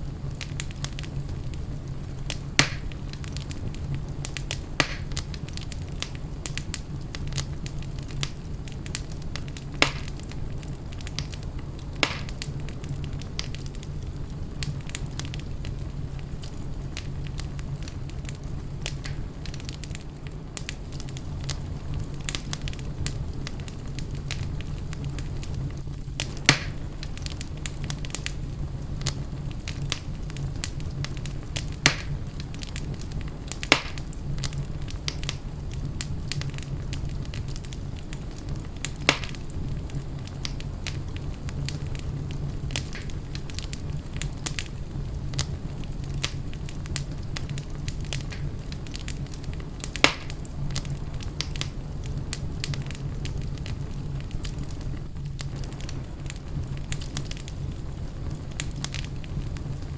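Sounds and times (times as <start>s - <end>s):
fire crackles and pops: 0.0s - 59.9s
fire rumble and hiss: 0.0s - 59.9s.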